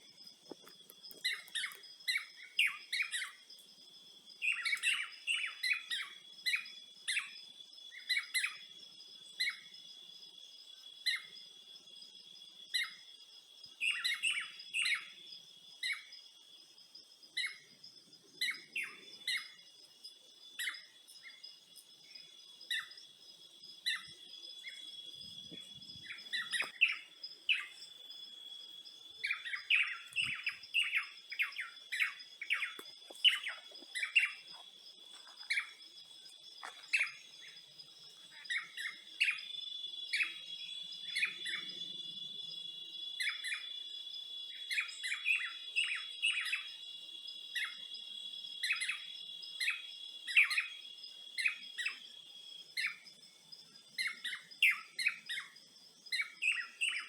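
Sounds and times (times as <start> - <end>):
insects droning: 0.0 - 57.0
birds chirping: 17.4 - 43.8.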